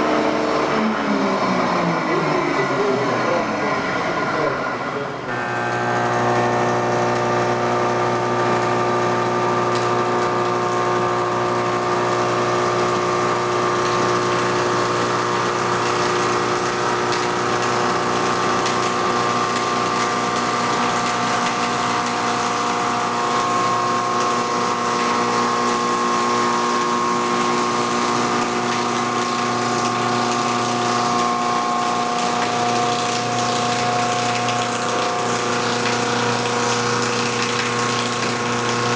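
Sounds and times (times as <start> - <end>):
machine motor whine: 0.0 - 38.9.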